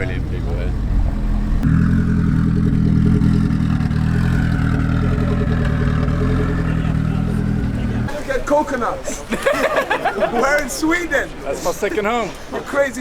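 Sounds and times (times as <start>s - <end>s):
car engine idling: 0.0s - 8.1s.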